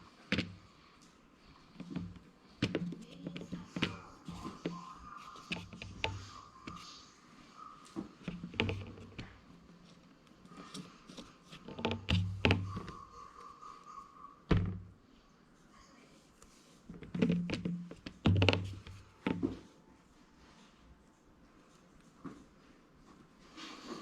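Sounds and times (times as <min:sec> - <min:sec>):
hands working clay on table: 0:00.0 - 0:13.1, 0:16.4 - 0:19.7.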